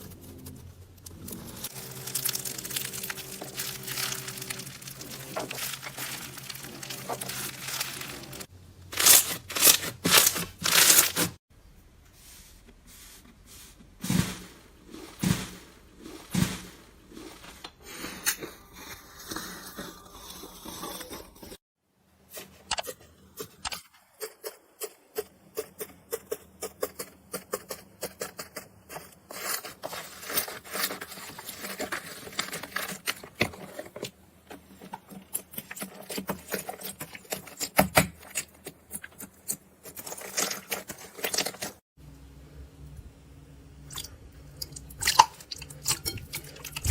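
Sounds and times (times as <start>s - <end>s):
slime crackling and popping: 1.5s - 11.4s.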